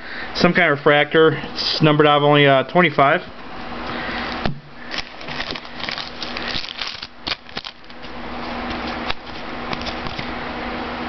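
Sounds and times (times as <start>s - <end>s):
trading cards crinkling and rustling: 4.8s - 10.3s.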